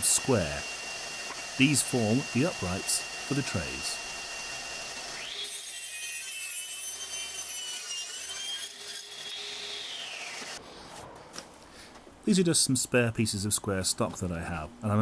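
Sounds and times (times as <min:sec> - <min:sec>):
table saw cutting wood: 0:00.0 - 0:10.6.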